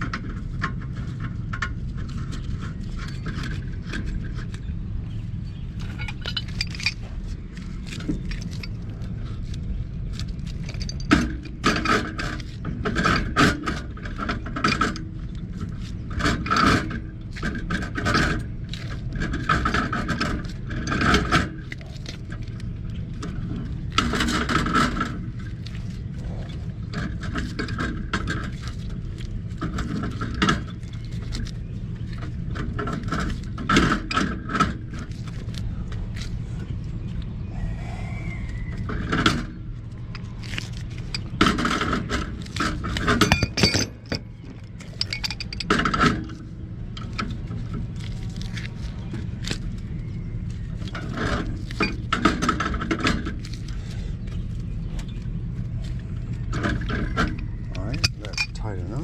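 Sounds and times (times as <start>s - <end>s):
metal pipe scraping and clinking: 0.0s - 35.6s, 38.8s - 54.4s, 55.9s - 59.0s
low background rumble: 0.0s - 59.0s.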